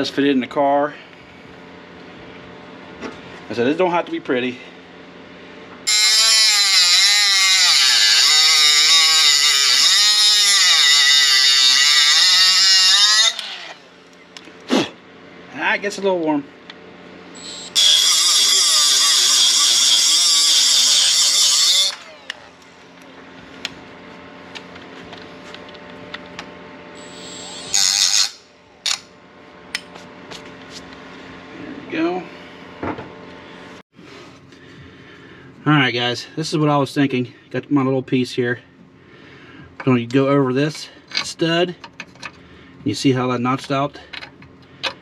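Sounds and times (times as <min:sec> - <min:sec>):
steady low hum: 0:00.0 - 0:05.9, 0:21.9 - 0:45.0
power tool cutting metal: 0:05.9 - 0:13.9, 0:17.4 - 0:22.6, 0:27.0 - 0:29.0.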